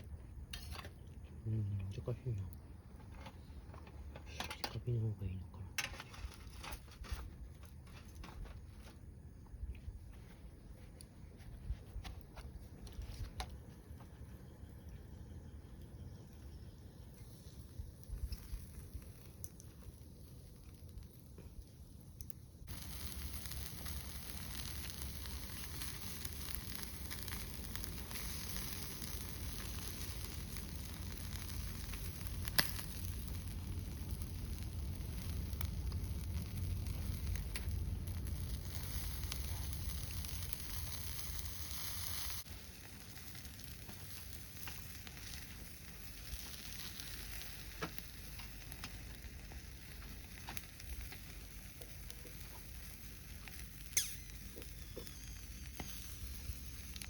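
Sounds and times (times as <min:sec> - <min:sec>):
food sizzling in a pan: 0:22.6 - 0:57.0
sharp click: 0:54.0 - 0:54.4.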